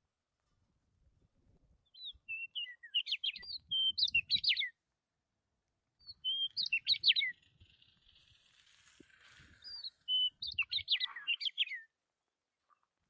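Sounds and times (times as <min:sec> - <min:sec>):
bird chirping and trilling: 0:01.9 - 0:04.7, 0:06.0 - 0:08.0, 0:09.6 - 0:11.9.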